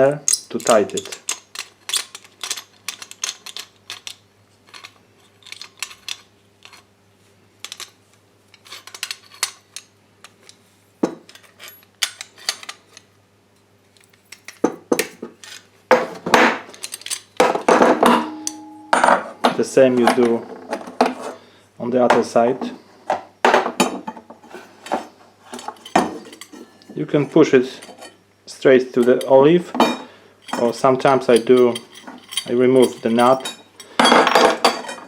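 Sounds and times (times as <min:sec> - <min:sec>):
tools clinking on metal fitting: 0:18.1 - 0:20.4, 0:29.0 - 0:35.0.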